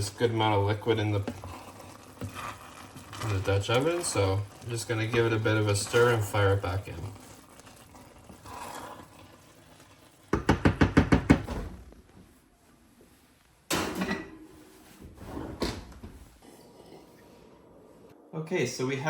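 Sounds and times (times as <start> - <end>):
metal pot clanking: 13.7 - 14.4.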